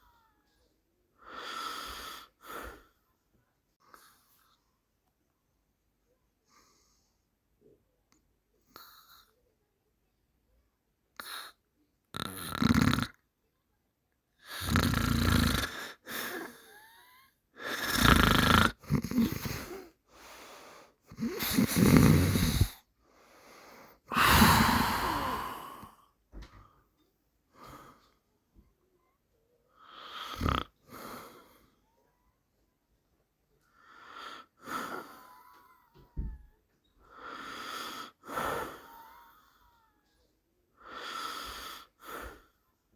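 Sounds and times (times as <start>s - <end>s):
man snoring: 12.2s - 13.1s, 14.5s - 15.8s, 17.7s - 19.6s, 21.1s - 22.8s, 24.1s - 25.9s, 30.0s - 30.7s.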